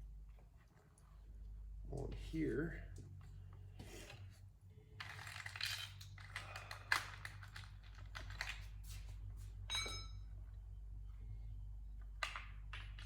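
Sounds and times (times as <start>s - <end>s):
low electrical hum: 0.0s - 13.0s
metallic ring: 9.7s - 10.4s.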